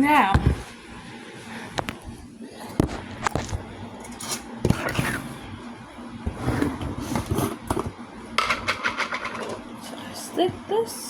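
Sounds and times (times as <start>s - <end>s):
scraping of food and containers: 2.6s - 5.4s, 6.2s - 9.7s
dishes knocking: 7.6s - 9.6s.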